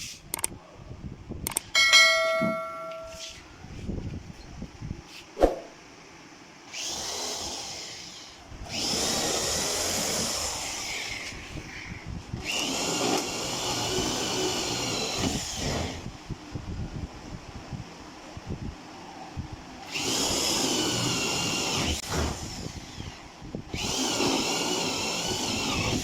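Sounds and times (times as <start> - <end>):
power drill whining: 6.7 - 11.8, 12.4 - 16.1, 19.9 - 26.0.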